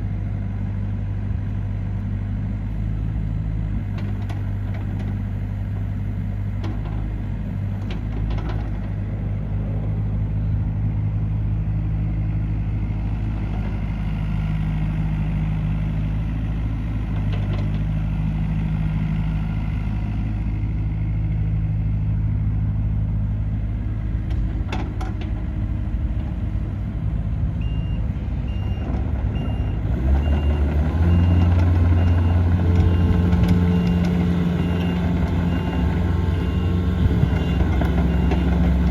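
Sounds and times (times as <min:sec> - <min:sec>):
excavator diesel engine running: 0:00.0 - 0:38.9
pulsing alarm beep: 0:29.4 - 0:38.6.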